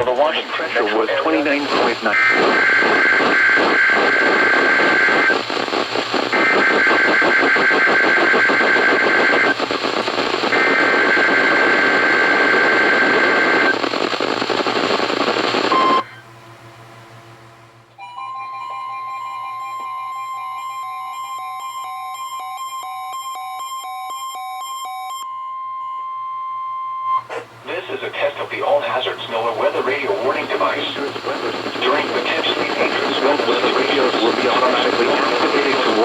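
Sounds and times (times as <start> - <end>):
radio signal hiss: 0.0 - 16.0, 27.2 - 36.0.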